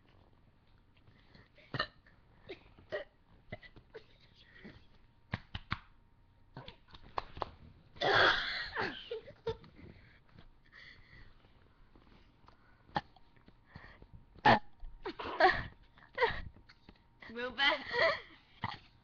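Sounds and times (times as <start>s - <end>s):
gulps and throat clicks: 12.9s - 13.5s, 14.4s - 16.1s
loud burp: 14.4s - 14.7s.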